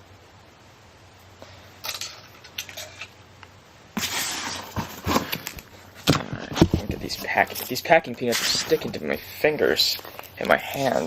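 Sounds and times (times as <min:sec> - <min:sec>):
hands rustling packing peanuts: 0:04.0 - 0:11.0.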